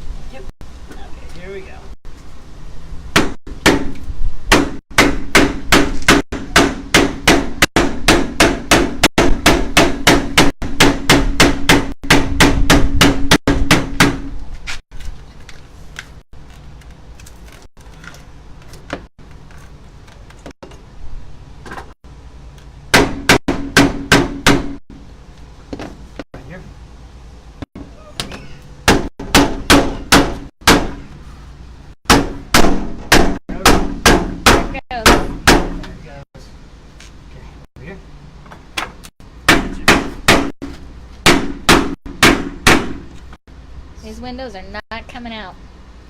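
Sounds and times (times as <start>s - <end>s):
hammer striking wooden block: 3.2s - 14.3s, 39.5s - 40.5s, 41.2s - 43.0s.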